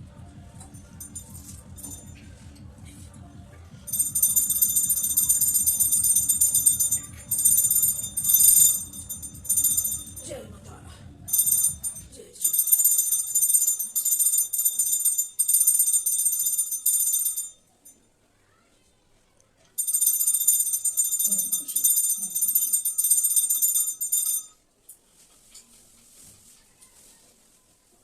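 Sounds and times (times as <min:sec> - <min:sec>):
hand bell ringing rapidly: 0:00.6 - 0:02.4, 0:03.9 - 0:10.3, 0:11.3 - 0:17.6, 0:19.8 - 0:24.5.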